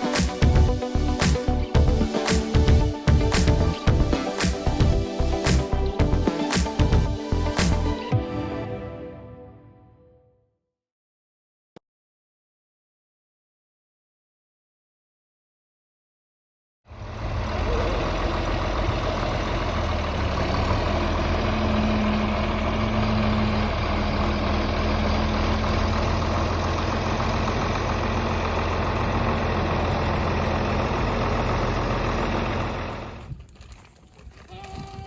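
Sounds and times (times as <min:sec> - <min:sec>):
vehicle engine humming: 0:00.0 - 0:08.2, 0:16.9 - 0:33.3.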